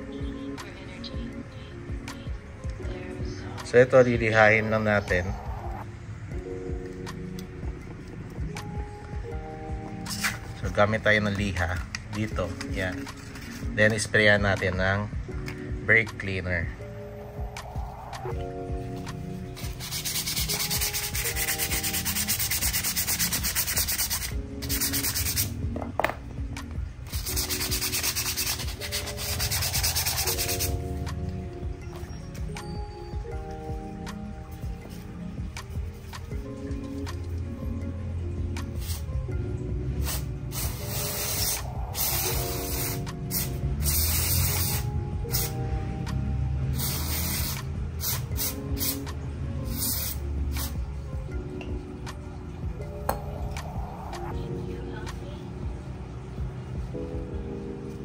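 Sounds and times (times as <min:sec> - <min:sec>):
background music: 0:00.0 - 0:58.0
sandpaper scratching on metal: 0:19.6 - 0:25.5, 0:27.2 - 0:30.8
aerosol spray hissing bursts: 0:19.6 - 0:25.6, 0:27.1 - 0:30.8, 0:38.8 - 0:39.1, 0:40.0 - 0:45.6, 0:46.7 - 0:49.1, 0:49.7 - 0:50.8.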